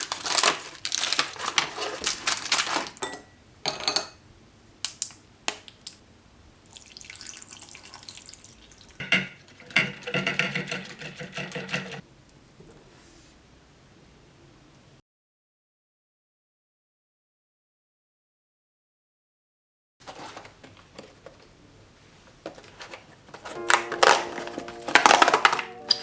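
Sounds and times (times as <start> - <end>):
rustling and clattering: 0.0 - 3.0, 9.0 - 12.0, 20.0 - 26.0.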